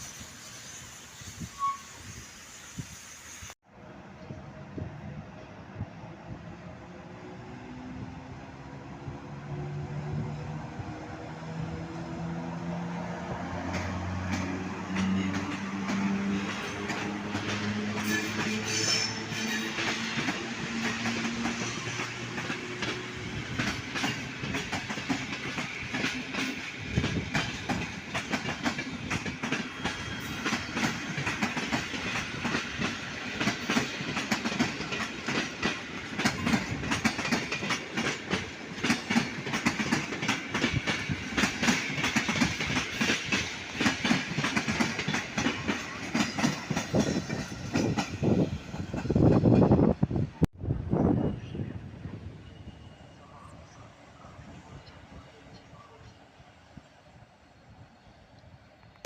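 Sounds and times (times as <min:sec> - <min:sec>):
train wheels clattering over rails: 0:13.4 - 0:49.8.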